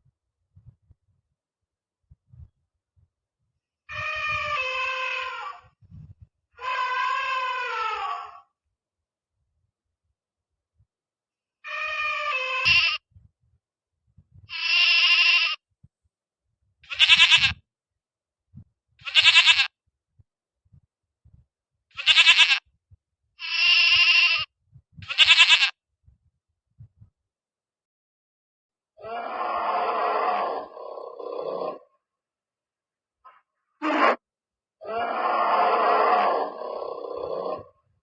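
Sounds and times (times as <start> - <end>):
animal bleating: 3.9 - 5.7, 6.6 - 8.4, 11.6 - 13.0, 14.5 - 15.6, 16.8 - 17.6, 19.0 - 19.8, 21.9 - 22.6, 23.4 - 25.8.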